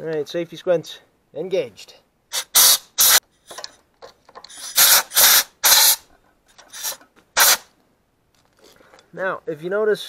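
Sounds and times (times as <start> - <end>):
compressed air blow gun hissing: 2.3 - 3.2, 4.5 - 6.0, 6.6 - 7.7.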